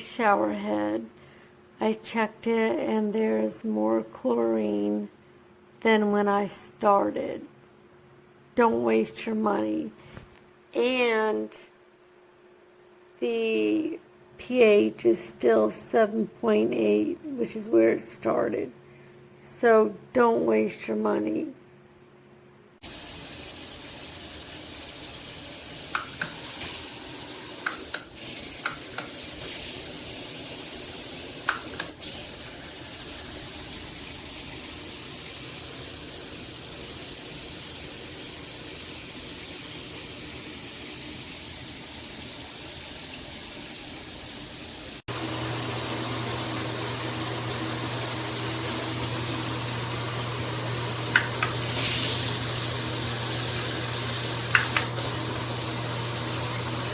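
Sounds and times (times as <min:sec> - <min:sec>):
shower spraying water: 0:22.8 - 0:56.9.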